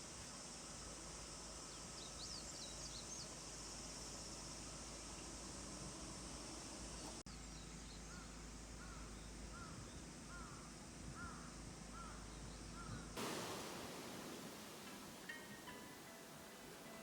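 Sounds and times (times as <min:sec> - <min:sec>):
bird calling: 0:13.2 - 0:16.6.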